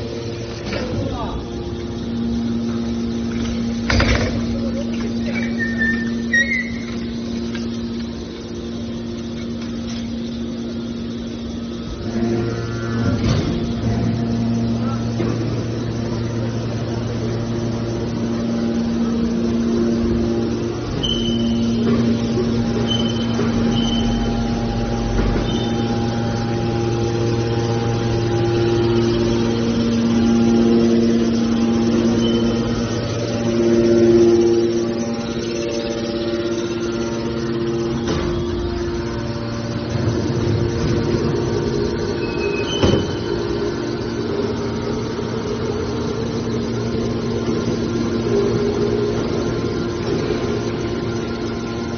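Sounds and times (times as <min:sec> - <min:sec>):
motor humming: 0:00.0 - 0:51.9
high squeak: 0:05.2 - 0:07.2, 0:21.0 - 0:21.8, 0:42.2 - 0:43.5.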